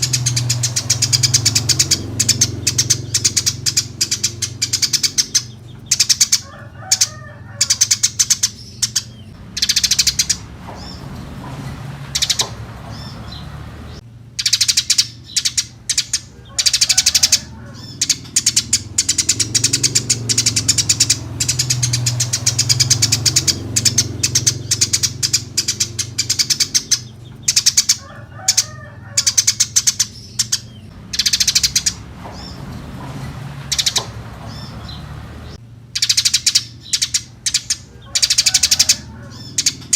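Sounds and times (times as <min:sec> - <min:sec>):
steady low hum: 0:00.0 - 0:28.7
sparrows chirping: 0:00.0 - 0:39.9.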